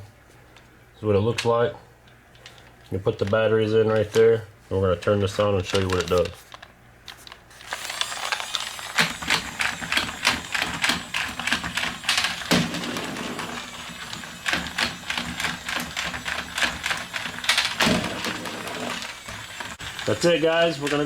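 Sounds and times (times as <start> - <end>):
toy mechanism clicking: 7.2 - 21.0.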